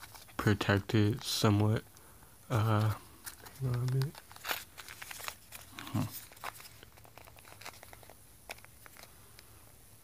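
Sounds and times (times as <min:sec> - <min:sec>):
packaging crinkling and clicking: 0:03.2 - 0:09.5.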